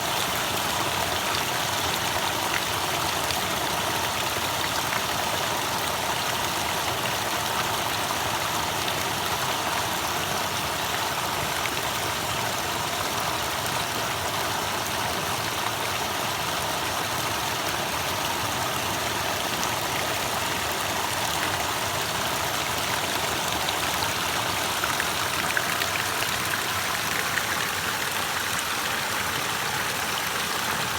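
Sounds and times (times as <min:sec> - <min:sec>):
stream water rushing: 0:00.0 - 0:30.9.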